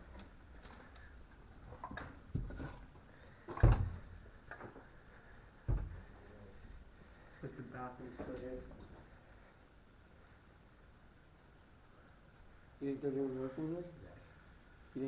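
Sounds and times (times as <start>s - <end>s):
dull thumps: 5.6s - 6.2s
light knocks and clicks: 5.6s - 6.3s.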